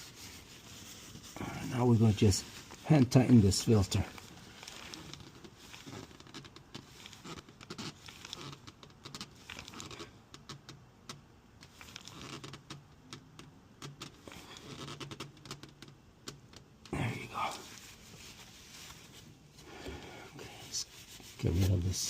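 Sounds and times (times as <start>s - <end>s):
gloved hands rustling: 0.0s - 10.8s, 17.0s - 22.0s.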